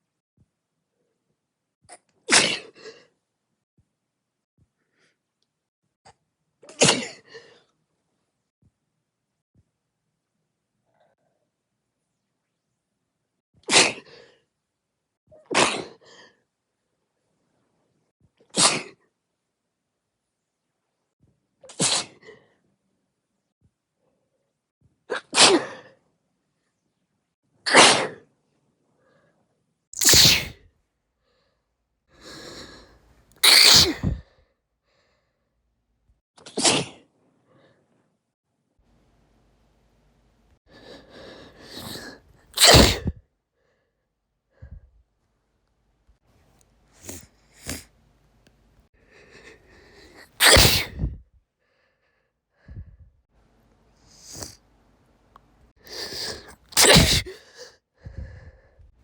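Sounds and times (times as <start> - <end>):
woman sneezing: 2.3 - 2.7, 30.0 - 30.6, 33.4 - 34.2, 42.6 - 43.2, 50.3 - 51.2, 55.9 - 57.7
sharp breaths before sneeze: 30.0 - 30.7, 32.2 - 35.4, 40.7 - 43.8, 46.9 - 48.0, 49.1 - 53.1, 54.0 - 54.6, 55.8 - 59.0.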